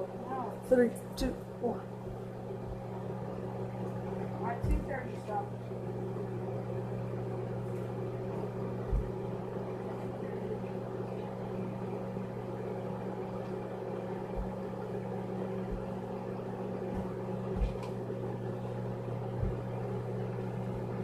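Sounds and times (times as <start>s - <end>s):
microwave oven humming: 0.0s - 21.0s
soft low thumps: 0.7s - 9.8s, 13.6s - 21.0s.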